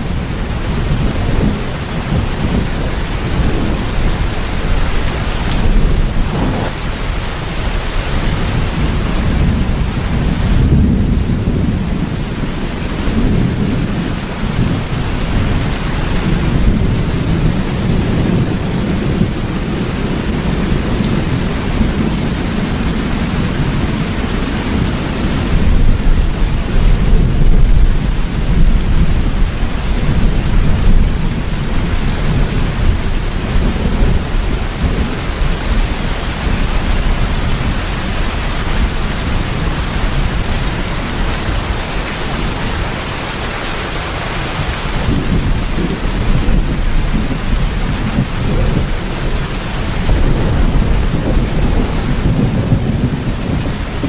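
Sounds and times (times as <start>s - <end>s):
rolling thunder: 0.0s - 41.6s, 44.8s - 54.0s
heavy rain: 0.0s - 54.0s.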